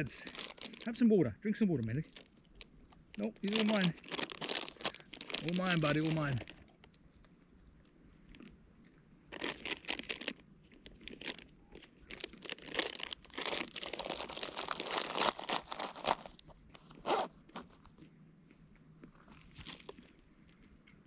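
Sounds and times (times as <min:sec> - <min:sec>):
plastic snack bag crinkling: 0:00.0 - 0:01.0, 0:01.8 - 0:06.9, 0:09.3 - 0:17.8, 0:19.2 - 0:20.1.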